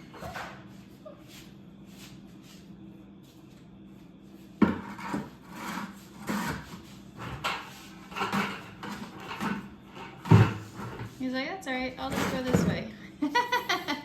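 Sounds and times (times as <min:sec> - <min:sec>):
objects knocking and scraping: 0:04.6 - 0:11.2, 0:12.0 - 0:12.9.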